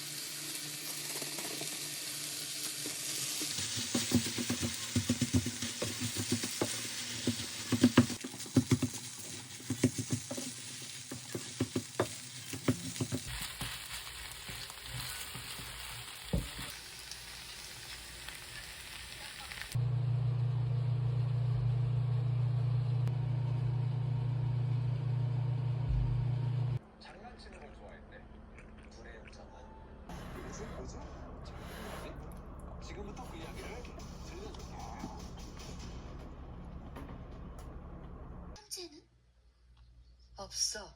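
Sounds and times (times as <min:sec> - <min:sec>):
food sizzling in a frying pan: 0:00.0 - 0:19.8
steady low hum: 0:27.7 - 0:38.6.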